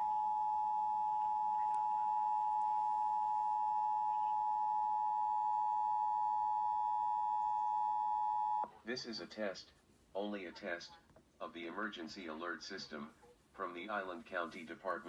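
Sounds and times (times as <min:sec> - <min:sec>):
two-tone attention signal: 0:00.0 - 0:08.6.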